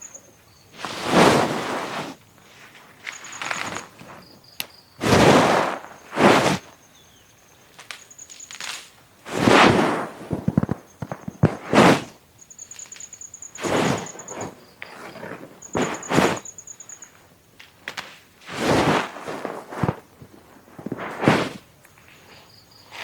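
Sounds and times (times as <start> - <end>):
loud rustling crunches: 0.7 - 7.1, 7.7 - 23.0
insect trilling: 3.0 - 5.0, 5.9 - 8.9, 12.4 - 17.2
small sharp cracks: 7.8 - 9.0, 17.6 - 18.2.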